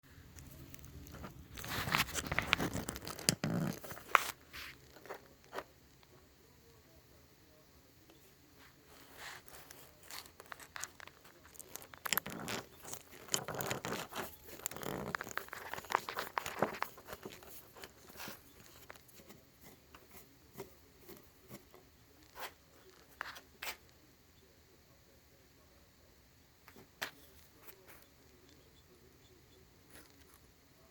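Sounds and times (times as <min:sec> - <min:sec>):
hand tool scraping plastic: 0:00.4 - 0:05.6, 0:08.9 - 0:23.8.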